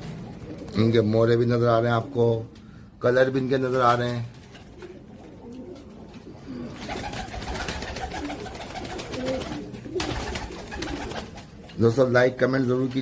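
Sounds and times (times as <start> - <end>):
pigeons cooing: 0.0 - 2.9, 4.4 - 11.9.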